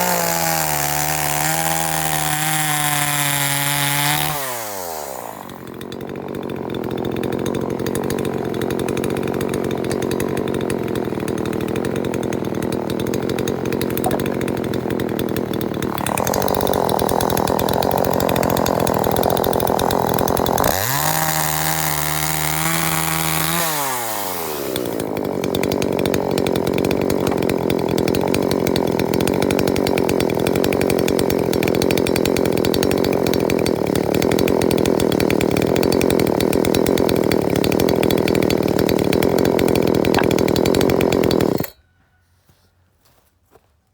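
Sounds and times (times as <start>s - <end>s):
chainsaw running and revving: 0.0s - 41.9s.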